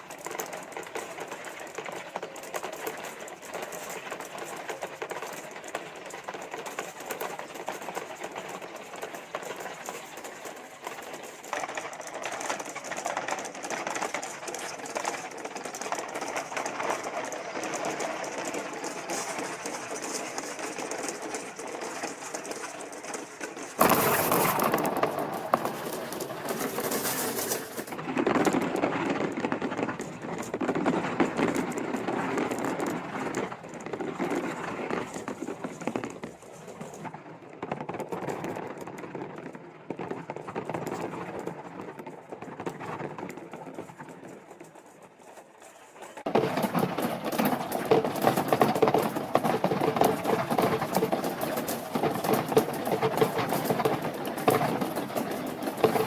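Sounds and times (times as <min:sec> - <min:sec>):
marbles rattling down plastic track: 0:00.1 - 0:28.6, 0:46.3 - 0:56.0.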